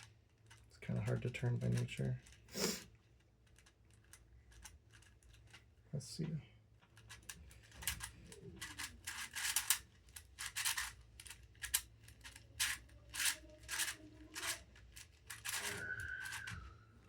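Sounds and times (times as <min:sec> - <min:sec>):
plastic puzzle pieces scraping: 0:07.0 - 0:16.6.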